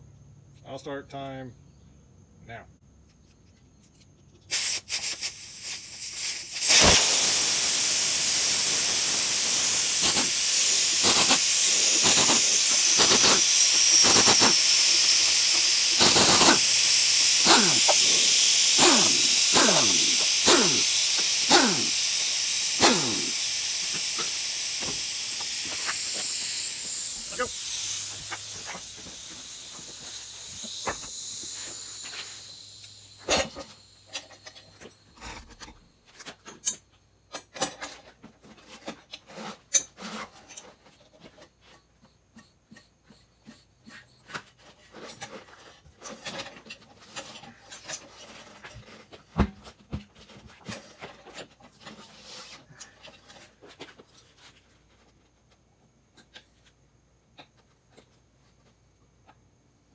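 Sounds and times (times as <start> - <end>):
air hissing out of tire: 4.5 - 34.4.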